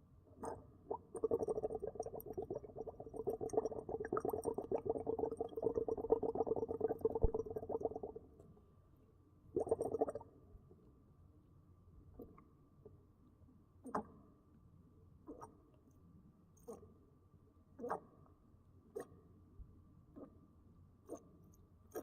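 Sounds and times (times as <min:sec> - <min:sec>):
air bubbling in water: 0:00.9 - 0:08.3, 0:09.6 - 0:10.2.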